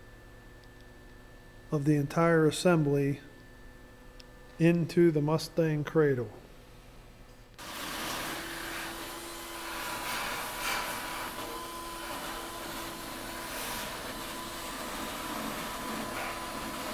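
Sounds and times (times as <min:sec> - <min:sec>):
faint hum: 0:00.0 - 0:07.6
machine running: 0:07.6 - 0:16.9.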